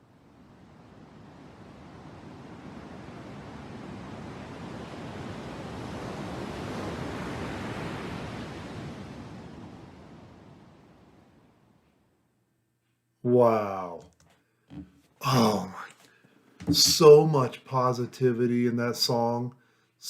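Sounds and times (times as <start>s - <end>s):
ocean surf wave: 0.0s - 11.7s.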